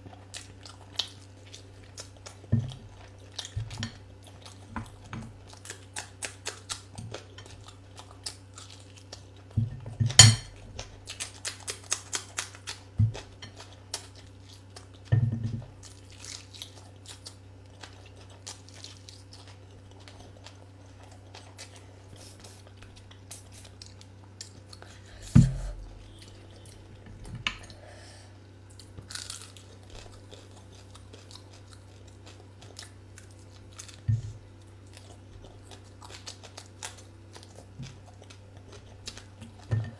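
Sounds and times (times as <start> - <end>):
chewing and crunching: 0.0 - 25.2, 28.7 - 39.9.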